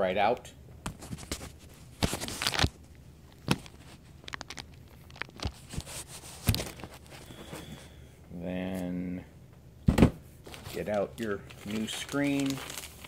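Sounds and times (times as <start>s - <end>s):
rustle of handling: 3.4s - 7.9s, 10.4s - 13.0s.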